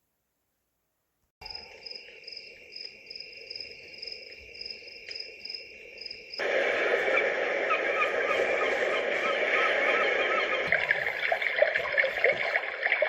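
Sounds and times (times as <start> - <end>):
recorded cricket chirping from speaker: 1.4 - 9.3.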